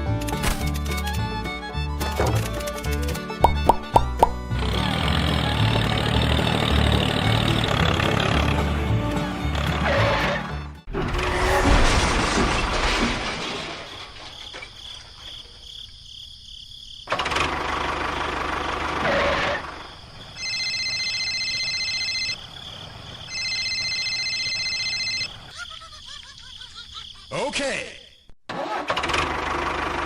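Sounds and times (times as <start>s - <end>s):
small engine running in bursts: 4.4s - 10.1s, 17.1s - 19.8s, 28.5s - 30.0s.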